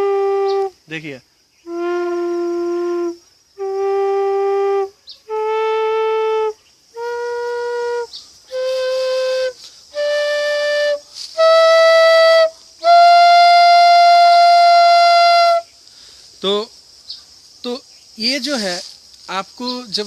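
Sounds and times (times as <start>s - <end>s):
bamboo flute notes: 0.0s - 0.8s, 1.6s - 15.8s
breath hiss: 6.5s - 13.0s, 15.4s - 19.6s.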